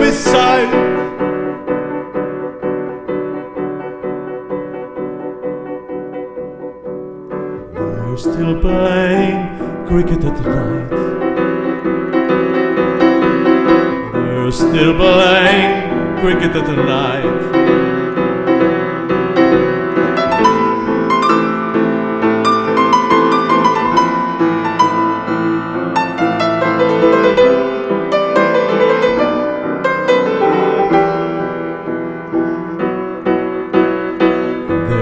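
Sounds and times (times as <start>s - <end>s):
piano melody over chords: 0.0s - 35.0s.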